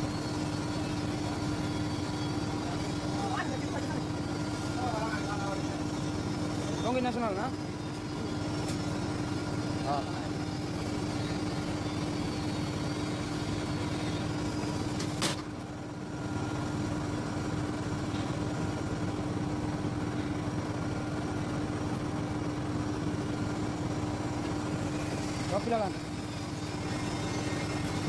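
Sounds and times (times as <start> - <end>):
mechanical hum: 0.0 - 28.0.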